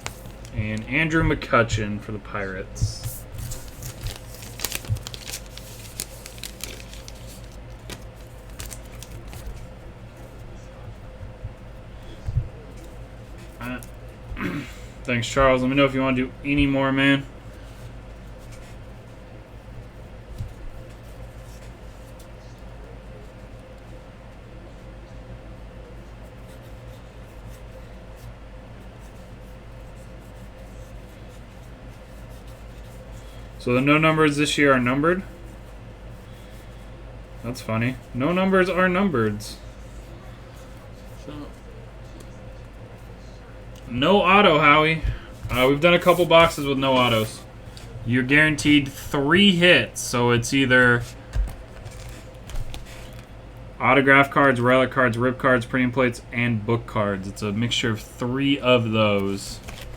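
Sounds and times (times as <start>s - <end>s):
cards and packaging rustling: 0.0s - 0.9s, 2.8s - 9.7s, 44.5s - 47.9s, 50.4s - 53.4s, 59.2s - 59.9s
wrappers crinkling: 0.0s - 0.9s, 3.0s - 9.7s, 50.8s - 53.4s, 59.4s - 59.9s
electrical hum: 0.0s - 59.9s
cards clicking: 3.4s - 9.6s.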